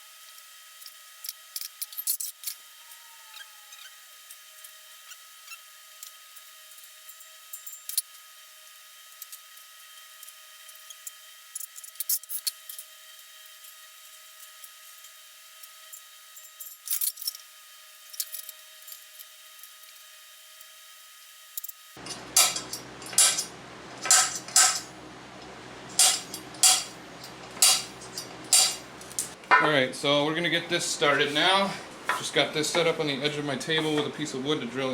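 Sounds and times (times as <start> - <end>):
metal tools clinking and clanking: 22.0 - 24.9, 25.9 - 29.8, 32.1 - 33.0.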